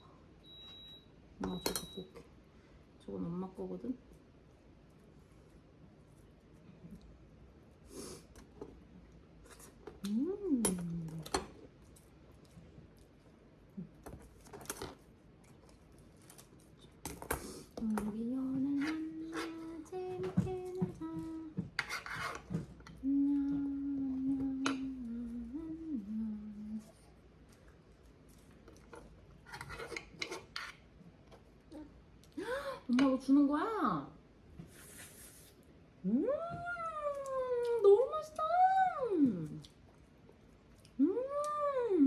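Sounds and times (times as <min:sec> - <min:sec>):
clicks and knocks of objects handled: 0:14.0 - 0:21.0.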